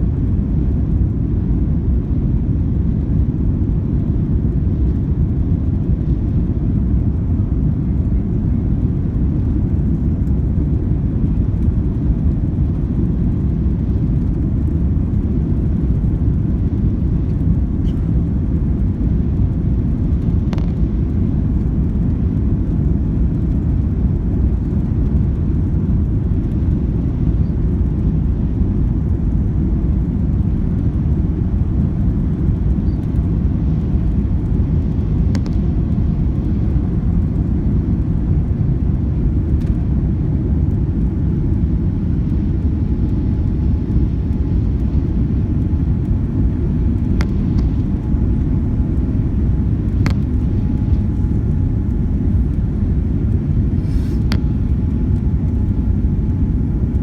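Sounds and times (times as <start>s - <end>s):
jet cabin rumble: 0.0s - 57.0s.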